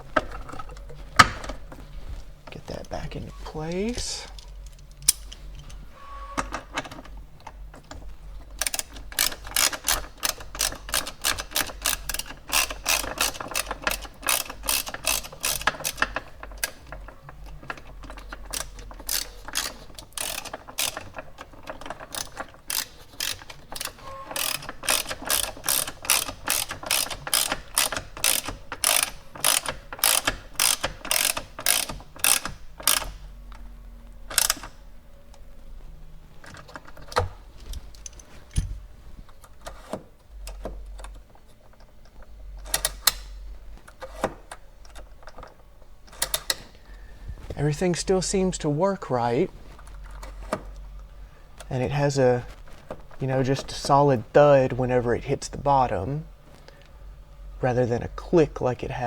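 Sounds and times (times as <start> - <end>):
ratcheting screwdriver clicking: 4.3 - 5.7, 8.6 - 33.2, 34.3 - 34.8, 42.1 - 43.4.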